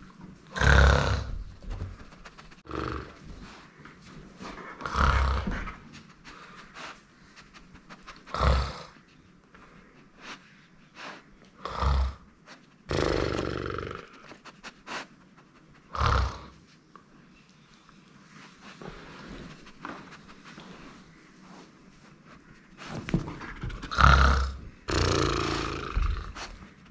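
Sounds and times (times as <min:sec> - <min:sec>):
person snoring loudly: 0:00.6 - 0:01.3, 0:12.9 - 0:14.1, 0:16.0 - 0:16.5, 0:23.9 - 0:26.4.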